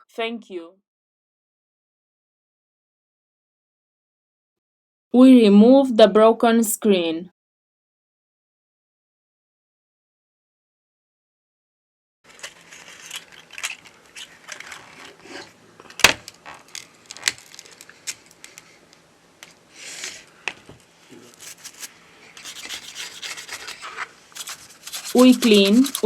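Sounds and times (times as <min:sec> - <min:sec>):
hand tools scraping and clicking: 0:21.3 - 0:26.0.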